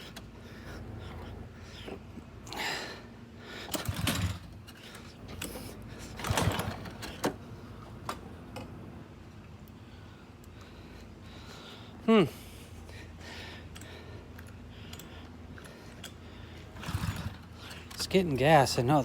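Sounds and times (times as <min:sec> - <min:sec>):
hands clicking and scraping on engine: 0:00.0 - 0:02.9, 0:03.5 - 0:08.8, 0:12.8 - 0:18.3.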